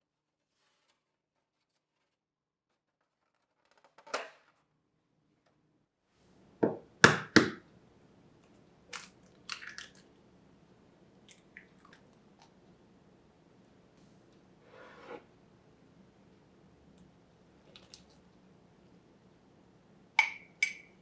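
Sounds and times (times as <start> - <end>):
utensils knocking and tapping: 6.6 - 7.6.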